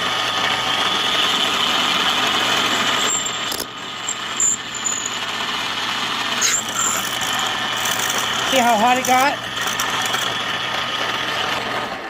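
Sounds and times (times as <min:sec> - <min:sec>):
power drill grinding into tile: 0:06.4 - 0:10.3.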